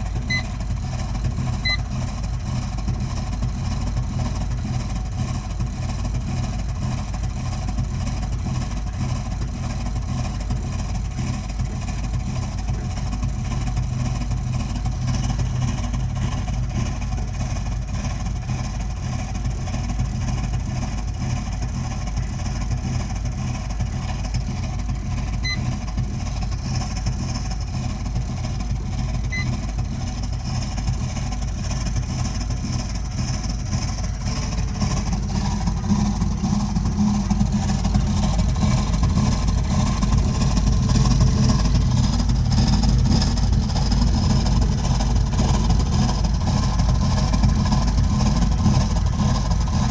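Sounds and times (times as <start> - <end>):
boiler steady low hum: 0.0 - 1.9.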